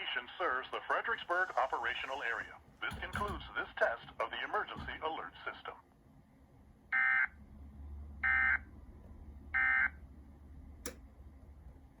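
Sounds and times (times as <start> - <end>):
sharp click: 10.8 - 11.1.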